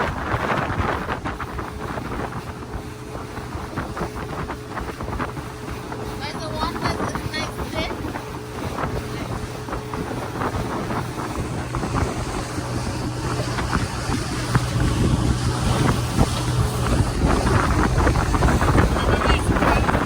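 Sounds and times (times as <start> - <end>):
motorboat engine running: 0.0 - 20.0
wind buffeting microphone: 0.0 - 20.0.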